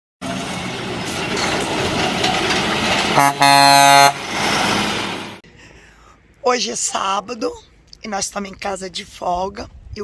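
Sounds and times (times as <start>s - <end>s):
vehicle engine rumbling: 0.2s - 6.4s
air horn: 3.2s - 4.2s.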